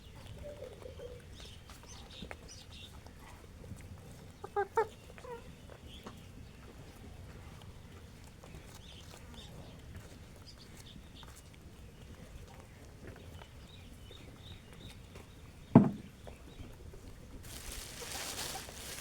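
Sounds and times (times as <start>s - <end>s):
chickens calling softly: 0.0s - 7.0s, 17.4s - 19.0s
chickens pecking: 0.1s - 11.6s, 17.4s - 19.0s
loud short thump: 15.8s - 16.1s.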